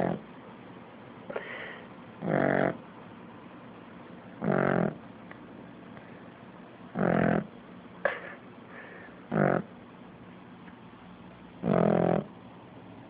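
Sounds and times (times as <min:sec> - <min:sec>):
pet snoring buzz: 0:00.0 - 0:00.3, 0:01.3 - 0:02.8, 0:04.3 - 0:05.1, 0:06.9 - 0:07.6, 0:09.2 - 0:09.8, 0:11.5 - 0:12.4.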